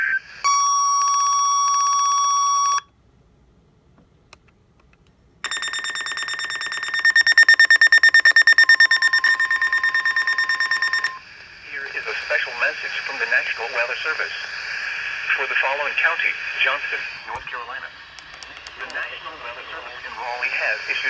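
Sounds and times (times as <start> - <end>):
shrill electronic alarm beeps: 0.4 - 2.8, 5.5 - 11.2
steady warning alarm tone: 0.5 - 2.8, 5.4 - 11.2.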